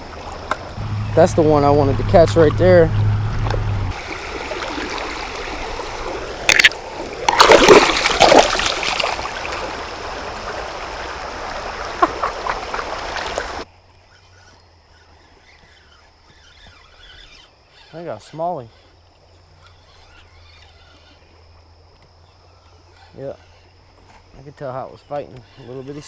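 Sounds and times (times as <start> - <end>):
creek water rushing: 0.0 - 13.7
loud water splashes: 3.9 - 13.6.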